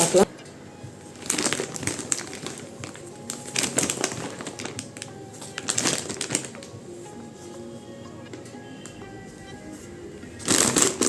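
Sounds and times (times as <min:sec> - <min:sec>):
soft background music: 0:00.0 - 0:11.0
plastic packaging crinkling: 0:01.0 - 0:07.1, 0:10.4 - 0:11.0.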